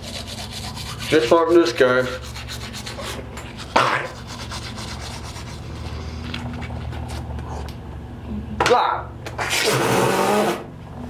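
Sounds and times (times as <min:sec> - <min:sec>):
toothbrush scrubbing teeth: 0:00.0 - 0:07.3.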